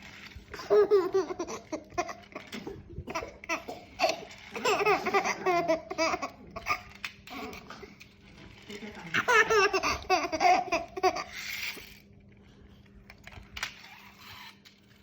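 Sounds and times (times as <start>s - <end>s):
baby laughing: 0.6s - 7.7s, 9.2s - 11.5s.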